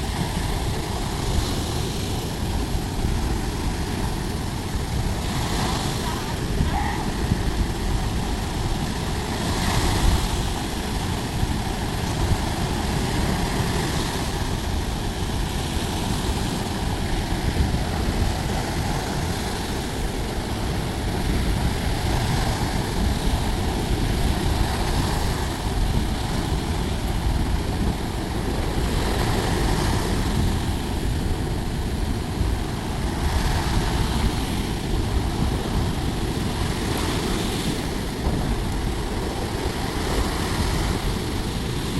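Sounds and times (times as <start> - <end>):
sea waves washing onto beach: 0.0 - 41.9
wind rumble on microphone: 0.0 - 41.9.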